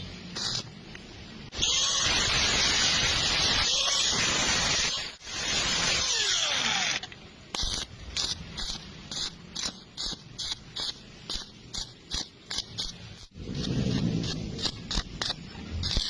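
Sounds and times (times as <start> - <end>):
welding arc crackling: 0.0 - 16.0.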